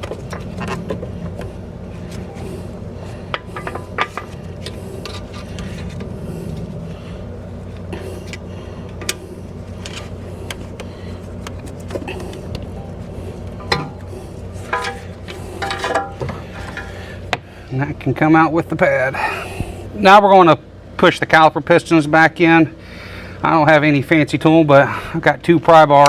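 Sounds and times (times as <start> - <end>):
steady low hum: 0.0 - 26.0
clicks and scrapes of tools: 3.3 - 6.1.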